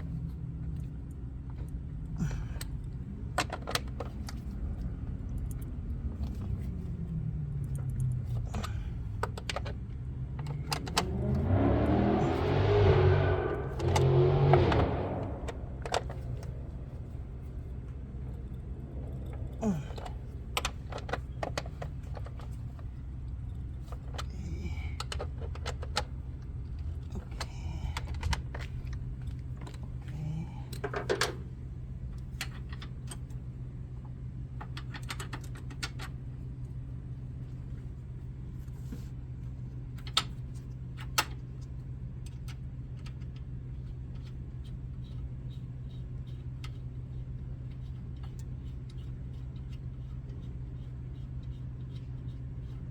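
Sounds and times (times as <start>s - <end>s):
steady low hum: 0.0s - 52.9s
metal and plastic parts rattling: 1.6s - 4.6s, 7.7s - 11.2s, 18.3s - 31.5s, 34.6s - 36.2s.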